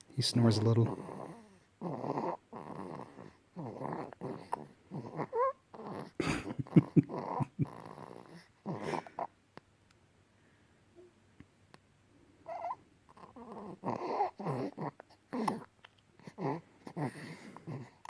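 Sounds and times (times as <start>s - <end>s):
baby snoring: 0.8s - 9.3s, 12.4s - 18.0s.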